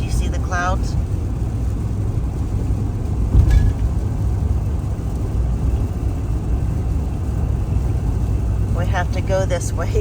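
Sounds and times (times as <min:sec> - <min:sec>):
truck road and engine rumble: 0:00.0 - 0:10.0.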